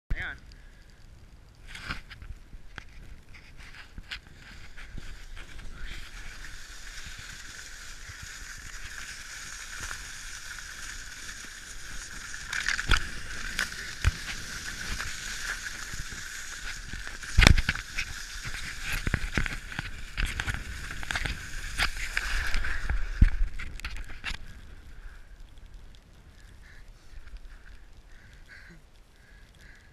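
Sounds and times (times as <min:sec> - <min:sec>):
skis scraping over ice: 0:01.7 - 0:24.8.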